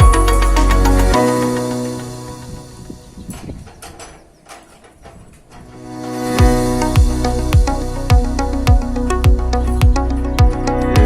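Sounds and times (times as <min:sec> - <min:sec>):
electronic music with bass kicks: 0:00.0 - 0:01.3, 0:06.4 - 0:11.0.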